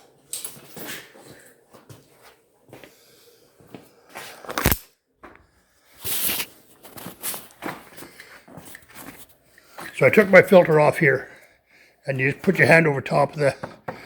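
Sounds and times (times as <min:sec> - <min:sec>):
handling knocks and rustles: 0:06.1 - 0:10.0.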